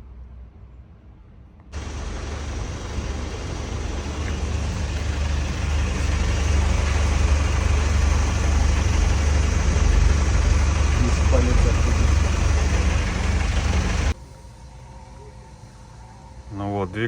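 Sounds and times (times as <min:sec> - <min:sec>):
diesel engine idling: 0:01.8 - 0:14.2.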